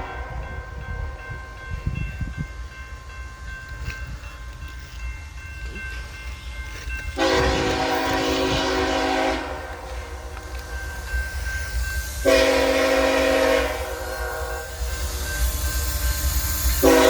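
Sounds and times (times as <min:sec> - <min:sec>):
low rumble of passing train: 0:00.0 - 0:17.0
train air horn blast: 0:07.2 - 0:10.3, 0:12.2 - 0:14.7, 0:16.8 - 0:17.0.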